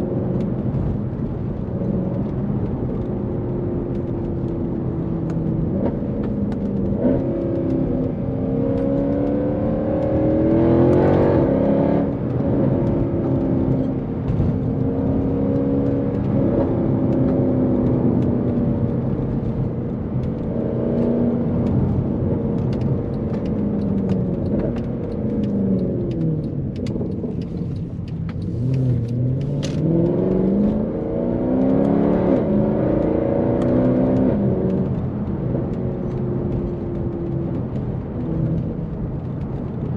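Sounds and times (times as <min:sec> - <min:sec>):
car engine accelerating: 0:00.0 - 0:39.9.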